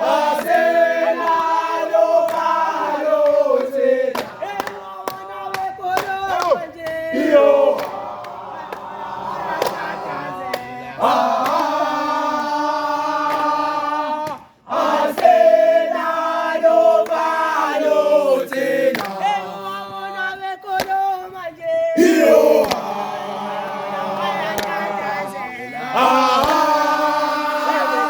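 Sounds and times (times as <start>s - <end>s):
group chanting in chorus: 0.0s - 28.0s.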